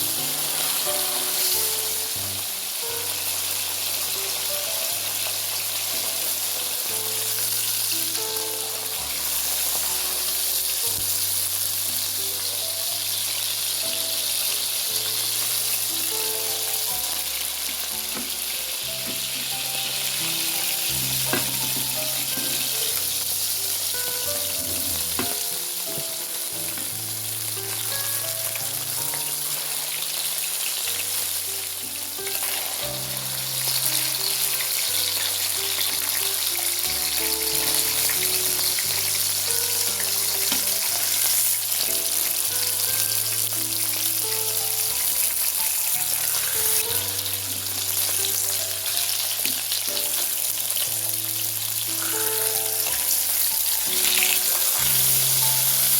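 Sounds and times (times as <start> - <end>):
food sizzling in a pan: 0.0 - 55.9
slow background music: 0.0 - 55.9.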